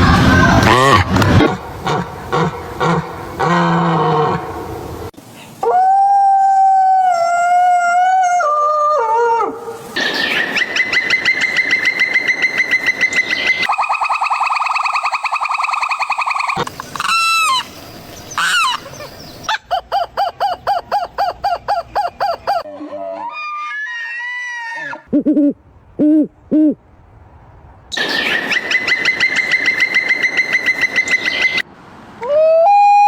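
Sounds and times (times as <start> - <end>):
downward-sliding cries: 0.0 - 1.5
long stepped animal call: 0.6 - 5.0
trilling animal calls: 10.0 - 25.1, 27.9 - 31.6.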